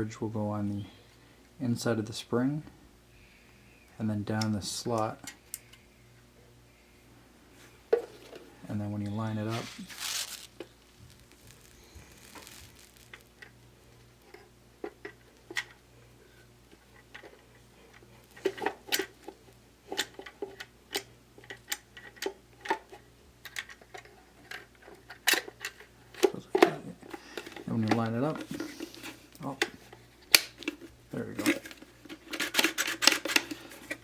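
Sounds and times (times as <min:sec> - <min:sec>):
plastic parts clicking and knocking: 0:17.0 - 0:34.0.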